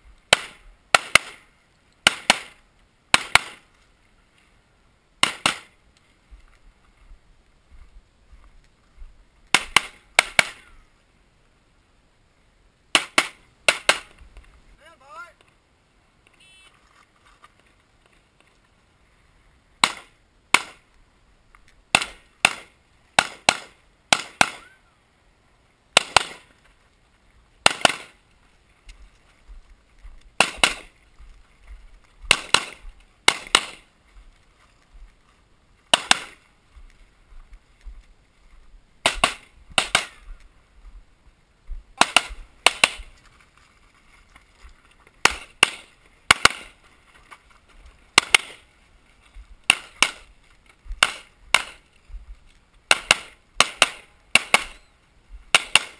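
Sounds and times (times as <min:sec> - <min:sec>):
pistol gunshots: 0:00.3 - 0:01.4, 0:02.0 - 0:03.6, 0:05.2 - 0:05.7, 0:09.5 - 0:10.7, 0:12.9 - 0:14.1, 0:19.8 - 0:20.8, 0:21.9 - 0:24.7, 0:26.0 - 0:26.5, 0:27.6 - 0:28.2, 0:30.4 - 0:30.9, 0:32.3 - 0:33.8, 0:35.9 - 0:36.4, 0:39.0 - 0:40.2, 0:42.0 - 0:43.1, 0:45.2 - 0:46.8, 0:48.2 - 0:48.6, 0:49.7 - 0:50.3, 0:51.0 - 0:51.8, 0:52.9 - 0:54.8, 0:55.5 - 0:55.9.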